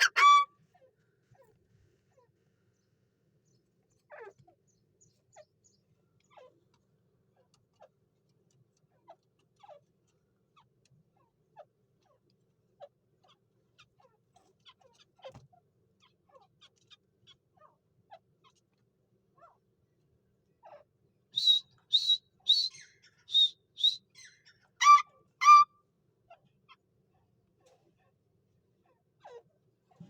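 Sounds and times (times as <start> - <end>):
francolin calling: 0.0 - 0.5, 21.4 - 24.0, 24.8 - 25.7.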